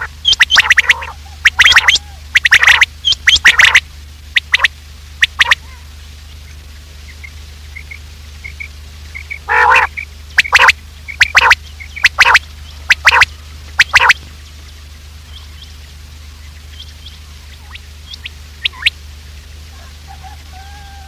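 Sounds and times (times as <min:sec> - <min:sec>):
recorded quail calls: 0:00.0 - 0:14.3, 0:16.6 - 0:19.0, 0:19.7 - 0:21.0
low hum: 0:00.0 - 0:21.0.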